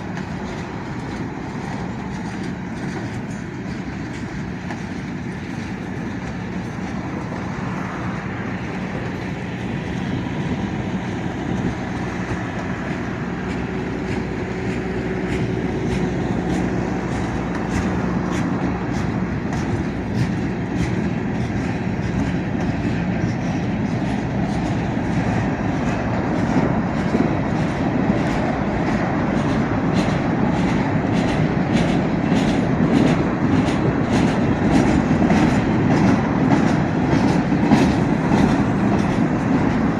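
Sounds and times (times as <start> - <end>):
train wheels rumbling on rails: 0.0 - 39.9
wheels clacking over rail joints: 0.0 - 39.9.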